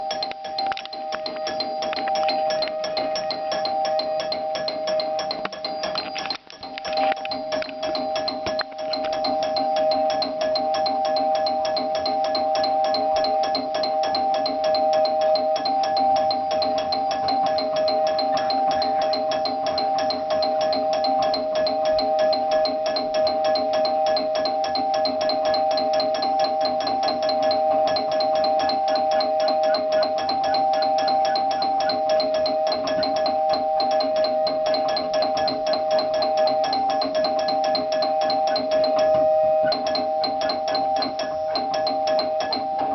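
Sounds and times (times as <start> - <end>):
doorbell ringing: 0.0 - 42.9.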